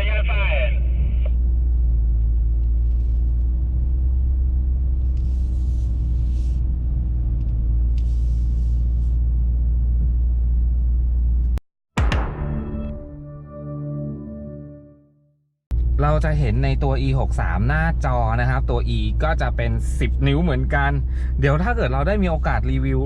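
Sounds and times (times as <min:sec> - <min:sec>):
car engine rumbling in cabin: 0:00.0 - 0:11.6, 0:15.7 - 0:23.0.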